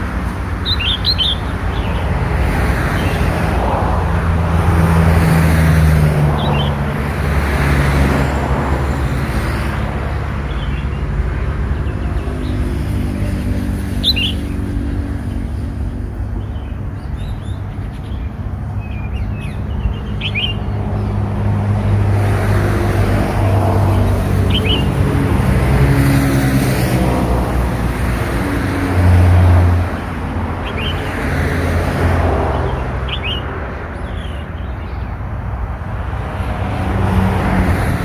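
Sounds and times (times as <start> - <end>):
road traffic rumble: 0.0 - 38.0
vehicles passing: 0.0 - 38.0
bird chirping high: 0.6 - 2.1, 13.9 - 14.8, 16.3 - 20.8, 24.0 - 25.0, 32.7 - 35.1.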